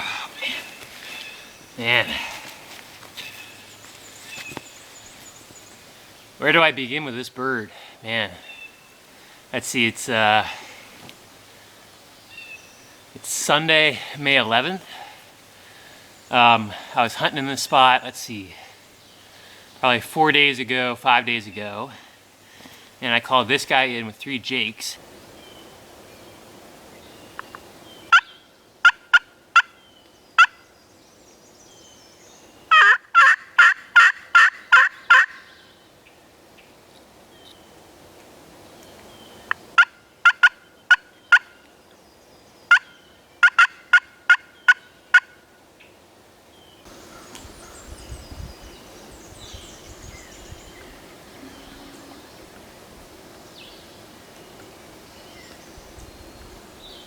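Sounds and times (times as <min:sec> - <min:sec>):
faint rustling: 0:00.0 - 0:06.4
turkey calling: 0:28.1 - 0:29.8, 0:32.7 - 0:35.5, 0:39.8 - 0:41.6, 0:42.7 - 0:45.4, 0:50.8 - 0:52.8.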